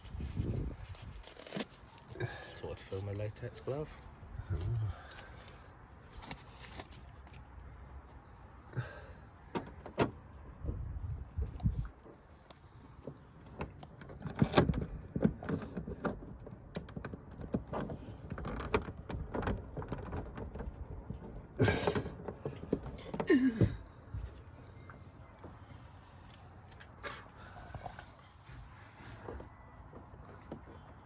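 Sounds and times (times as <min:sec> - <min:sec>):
scraping rustles: 0:00.0 - 0:08.2.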